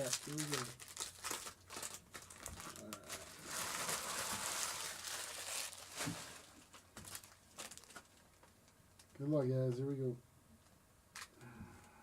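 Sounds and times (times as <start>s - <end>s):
foil wrapper torn and crinkled: 0.0s - 9.1s.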